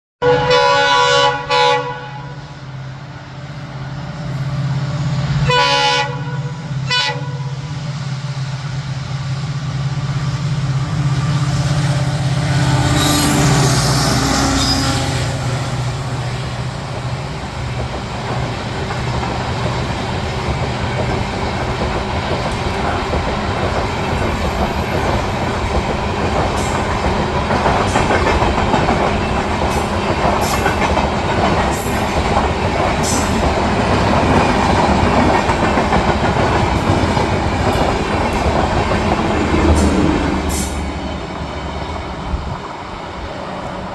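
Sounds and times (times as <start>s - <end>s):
locomotive horn blasts: 0.2s - 2.4s, 5.4s - 7.6s, 12.3s - 15.6s
train wheels on rails: 3.3s - 43.9s.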